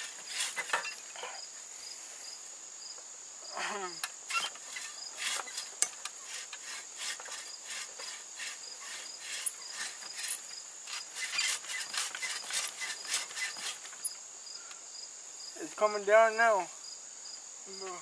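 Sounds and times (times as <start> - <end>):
hand saw rasping through wood: 0.0 - 1.0, 4.3 - 14.0
insects shrilling: 0.0 - 15.9.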